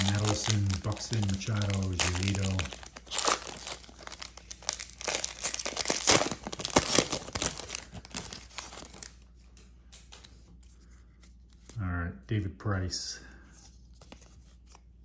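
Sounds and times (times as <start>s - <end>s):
wrapper tearing and crinkling: 0.0s - 9.2s
cards rustling: 0.0s - 9.3s, 13.5s - 15.0s.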